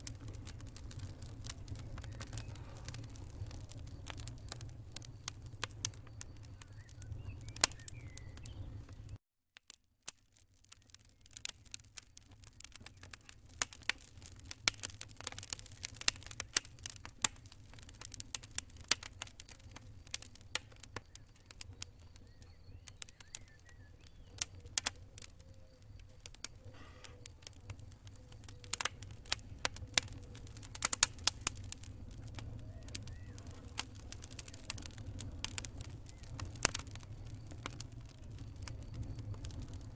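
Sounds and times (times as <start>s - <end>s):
low steady rumble: 0.0s - 9.2s
fire crackling and popping: 0.0s - 39.9s.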